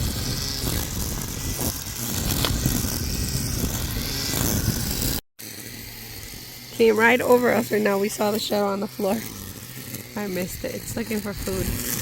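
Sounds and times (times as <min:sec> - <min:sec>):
wind buffeting microphone: 0:00.0 - 0:05.2, 0:10.5 - 0:12.0.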